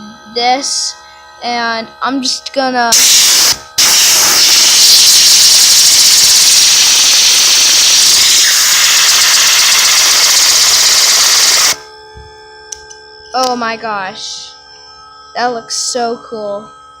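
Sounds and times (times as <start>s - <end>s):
air blast hissing: 2.9s - 11.8s.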